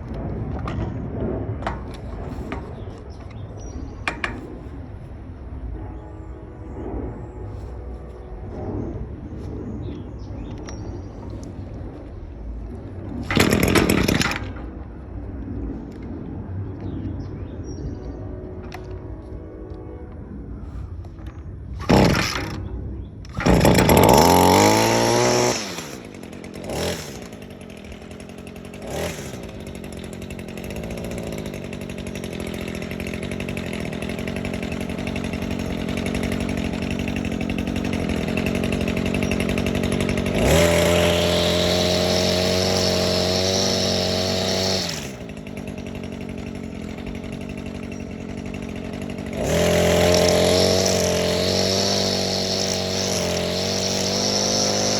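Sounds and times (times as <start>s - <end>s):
string trimmer engine starting and idling: 8.3s - 17.0s, 20.6s - 54.9s.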